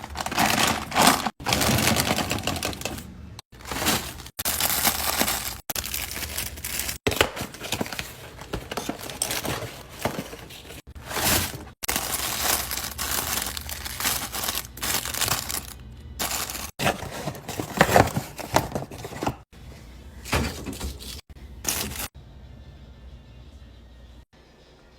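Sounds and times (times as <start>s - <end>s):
plastic packaging crinkling and tearing: 0.0s - 19.1s.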